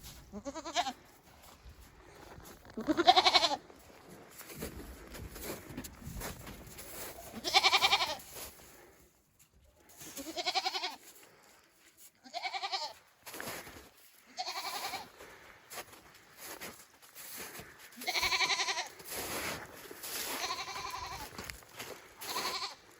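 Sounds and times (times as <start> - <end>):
goats bleating: 0.3 - 1.0, 2.8 - 3.7, 7.3 - 8.4, 10.0 - 11.1, 12.2 - 13.0, 14.2 - 15.2, 17.9 - 19.2, 20.2 - 22.9.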